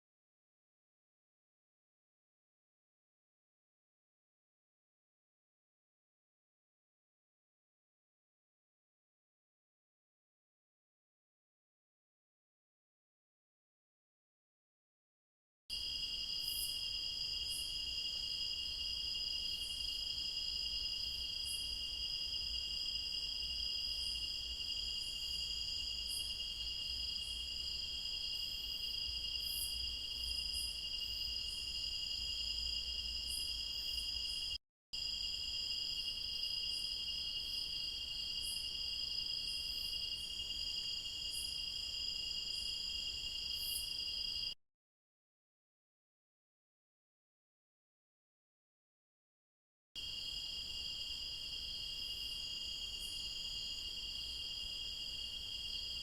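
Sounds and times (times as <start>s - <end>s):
crickets trilling: 15.7s - 44.6s, 50.0s - 56.0s.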